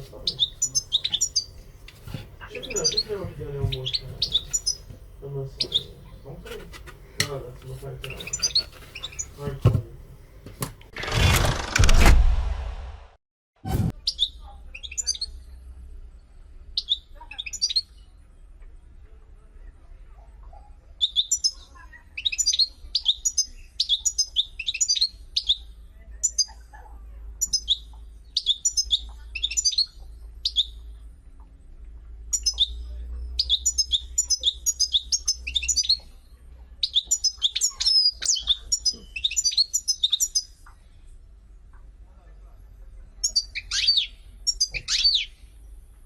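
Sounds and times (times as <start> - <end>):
small bird chirping: 0.0 - 6.5, 8.1 - 9.6, 14.0 - 15.5, 16.8 - 18.2, 21.0 - 26.6, 27.4 - 31.5, 32.2 - 41.9, 43.2 - 45.8.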